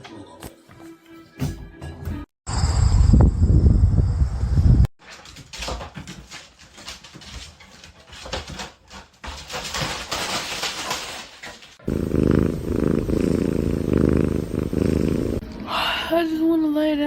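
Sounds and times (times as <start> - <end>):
rustling: 5.0 - 15.4
cat purring loudly: 11.8 - 15.4.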